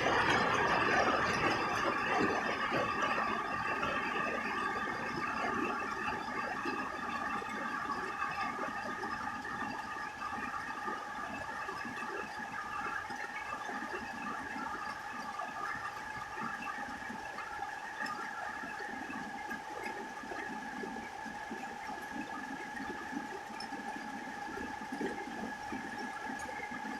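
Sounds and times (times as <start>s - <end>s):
rain on a roof: 0.0s - 12.4s.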